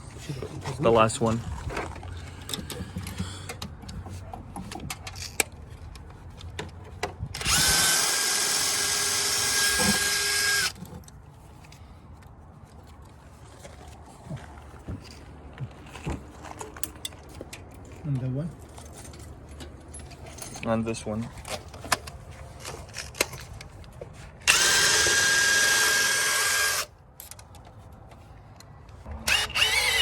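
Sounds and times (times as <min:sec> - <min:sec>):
power drill spinning: 0:07.4 - 0:10.8, 0:24.5 - 0:26.9, 0:29.3 - 0:30.0.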